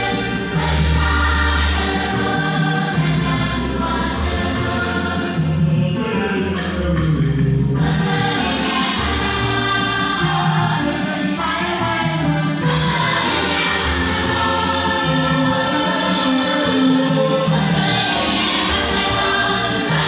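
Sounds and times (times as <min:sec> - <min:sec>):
gospel choir singing: 0:00.0 - 0:06.6, 0:07.6 - 0:20.0
low bass notes: 0:00.0 - 0:15.8.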